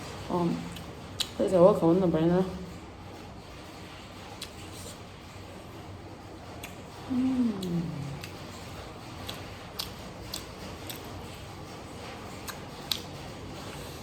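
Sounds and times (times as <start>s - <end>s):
chewing: 0.5s - 1.4s, 6.5s - 14.0s
wet mouth clicks and smacks: 0.7s - 1.4s
person humming: 7.1s - 8.2s.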